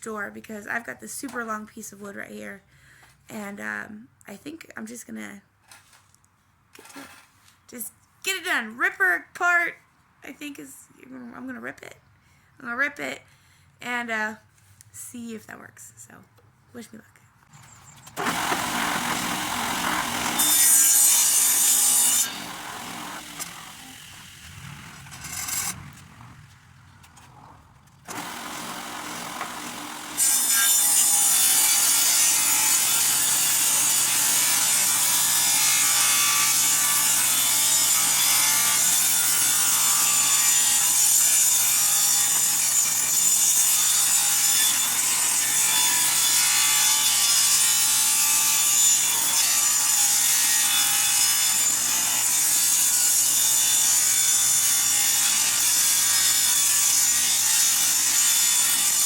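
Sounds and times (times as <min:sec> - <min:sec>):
table saw ripping wood: 0:18.1 - 0:26.4, 0:28.0 - 0:59.0.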